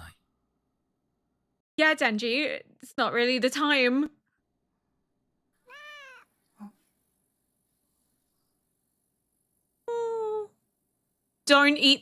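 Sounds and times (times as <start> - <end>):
cat meowing: 5.6 - 6.3.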